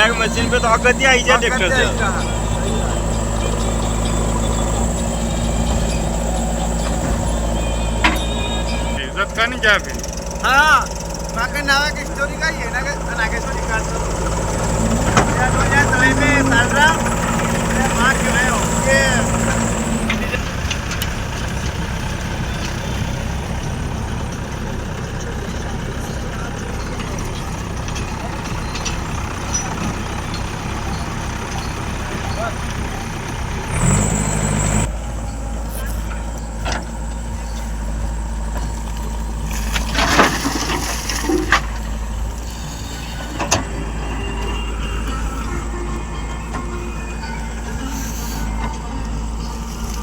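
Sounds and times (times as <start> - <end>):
short rattle: 0.0 - 45.5
heavy diesel engine running: 0.0 - 50.0.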